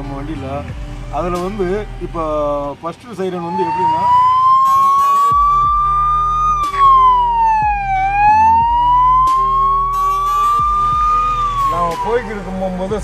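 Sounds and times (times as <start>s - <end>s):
ambulance siren wailing: 3.3s - 13.0s.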